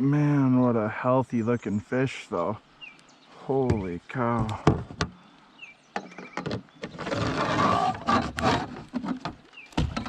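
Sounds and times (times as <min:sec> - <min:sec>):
scraping and clattering: 0:06.4 - 0:10.0.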